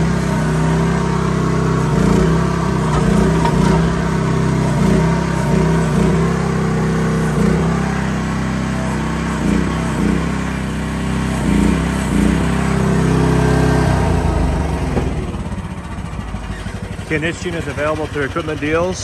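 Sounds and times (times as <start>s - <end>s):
small gasoline engine running: 0.0s - 19.0s.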